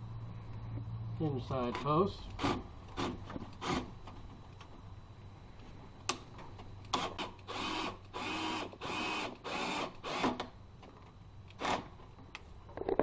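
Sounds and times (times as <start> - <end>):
power drill motor whirring: 6.9 - 10.5, 11.5 - 11.9.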